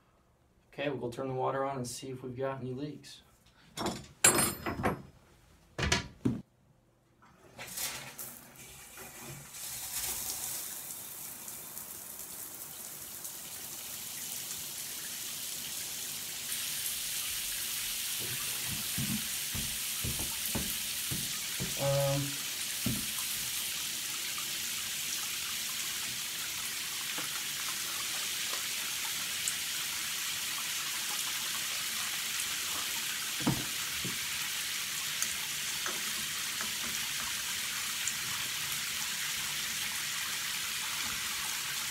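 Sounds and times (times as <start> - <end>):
water running from faucet: 7.6 - 41.9
knocks: 18.6 - 21.8, 22.8 - 23.1.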